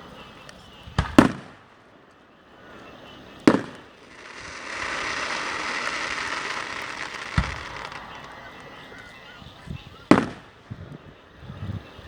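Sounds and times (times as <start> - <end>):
fireworks crackling hiss: 2.5 - 10.6
firework shell bang: 3.6 - 9.0.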